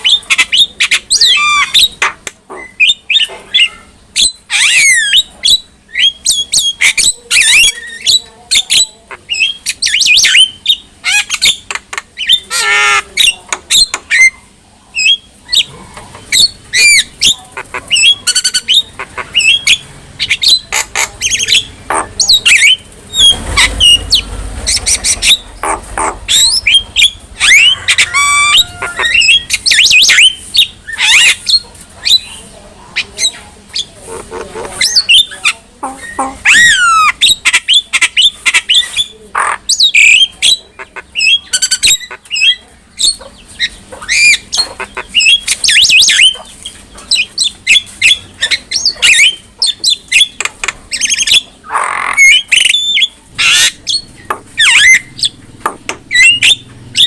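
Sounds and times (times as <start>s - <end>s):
myna bird singing varied whistles: 56.1s - 57.0s.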